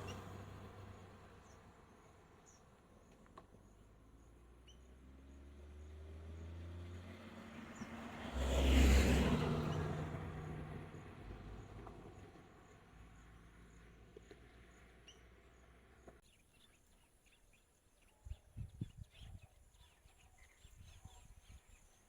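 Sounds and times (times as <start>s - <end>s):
vehicle passing by: 4.4s - 16.0s.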